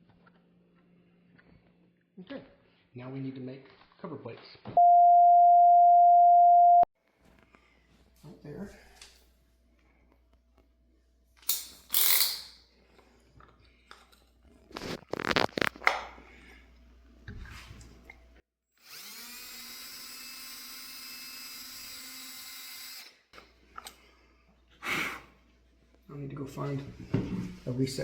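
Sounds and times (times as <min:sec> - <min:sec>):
power tool motor spinning: 0:18.8 - 0:23.2.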